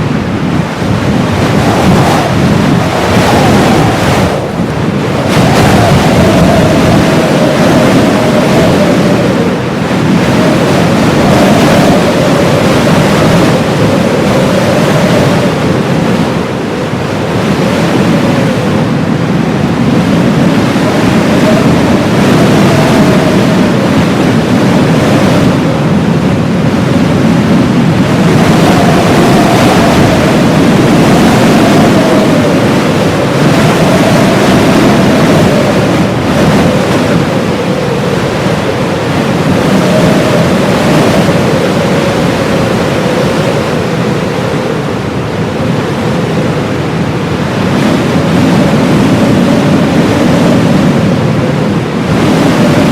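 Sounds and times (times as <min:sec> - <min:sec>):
howling blizzard wind: 0:00.0 - 0:52.9.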